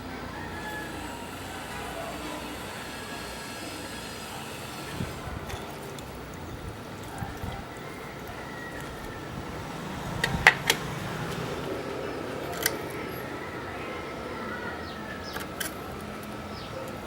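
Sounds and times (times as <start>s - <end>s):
utensils clicking on small pot: 0.5s - 9.2s.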